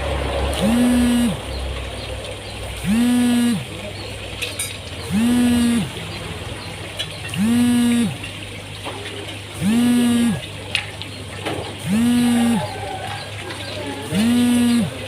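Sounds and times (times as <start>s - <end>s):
low buzzing tone: 0.5s - 1.5s, 2.8s - 3.8s, 5.1s - 6.0s, 7.3s - 8.2s, 9.6s - 10.5s, 11.8s - 12.7s, 14.1s - 15.0s.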